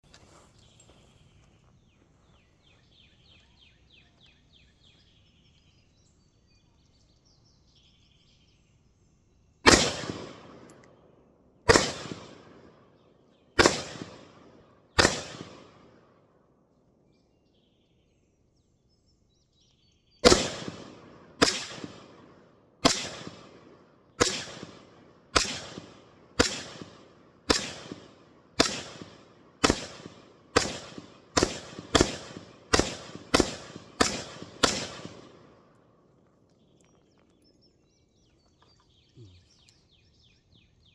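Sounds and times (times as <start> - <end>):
rifle gunshots: 9.6 - 10.7, 11.7 - 12.7, 13.6 - 15.9, 20.2 - 35.6.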